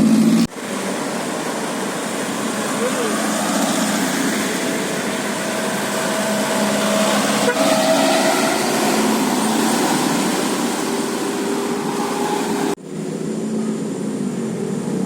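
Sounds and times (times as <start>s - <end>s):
engine and street noise: 0.0s - 15.0s
bus multi-tone horn: 5.9s - 9.7s.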